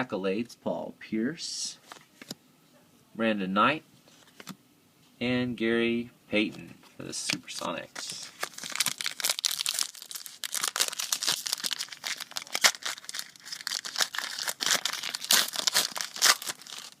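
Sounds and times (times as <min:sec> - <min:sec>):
plastic wrapper crinkling and tearing: 0:07.6 - 0:17.0.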